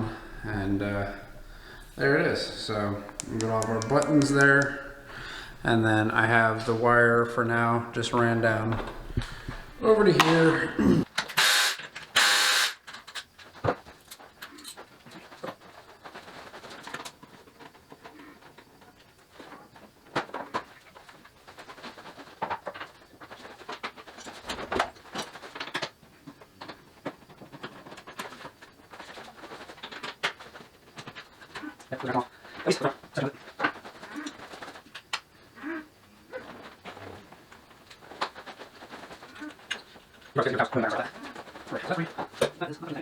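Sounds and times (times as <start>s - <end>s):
tools clicking and knocking: 3.1s - 5.7s.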